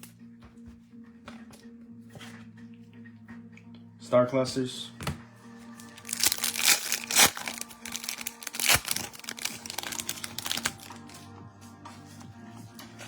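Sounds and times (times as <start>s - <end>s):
quiet background music: 0.0s - 13.0s
wrapper crinkling and tearing: 5.8s - 11.2s.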